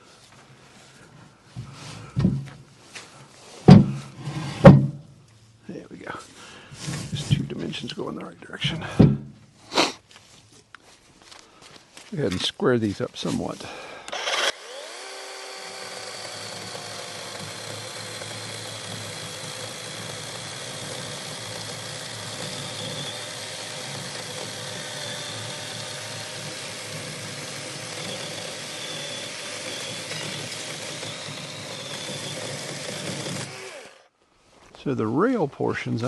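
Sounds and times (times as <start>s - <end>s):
motor running steadily: 14.1s - 34.1s.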